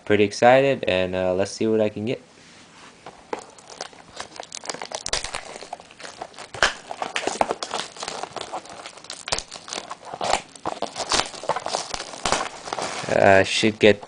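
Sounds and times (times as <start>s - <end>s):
plastic wrapping crinkling: 3.1s - 14.0s.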